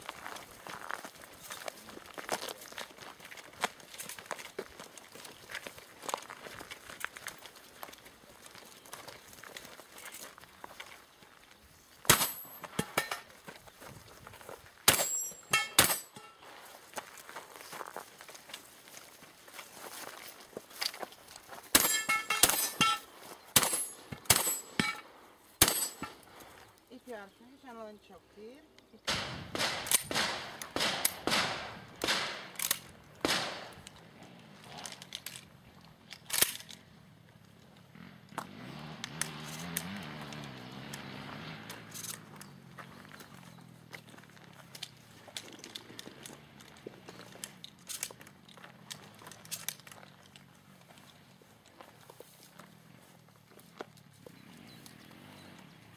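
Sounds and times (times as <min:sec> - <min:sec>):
shotgun shots: 0:12.1 - 0:13.1, 0:14.9 - 0:16.2, 0:23.6 - 0:25.0, 0:25.6 - 0:26.2, 0:29.1 - 0:33.8
metallic clangs: 0:12.1 - 0:13.3, 0:14.9 - 0:16.4, 0:21.7 - 0:25.0, 0:25.6 - 0:26.2
steel targets ringing: 0:14.9 - 0:16.4, 0:21.8 - 0:25.0, 0:25.6 - 0:26.2.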